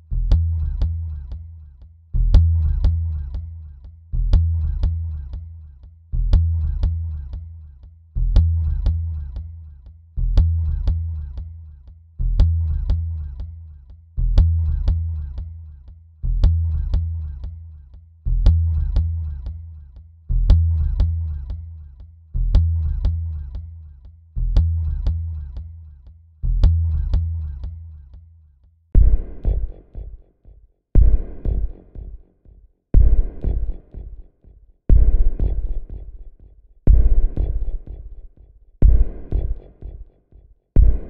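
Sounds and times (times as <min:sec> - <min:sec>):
deep bass note: 0:29.0 - 0:30.1, 0:31.0 - 0:32.2, 0:33.0 - 0:34.2, 0:34.9 - 0:40.0, 0:40.8 - 0:41.0.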